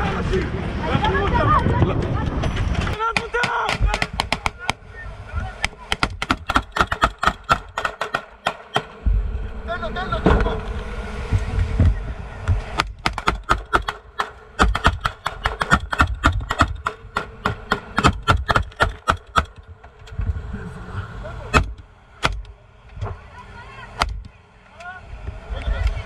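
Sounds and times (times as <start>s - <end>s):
gunshots: 5.9s - 9.0s, 12.8s - 19.6s.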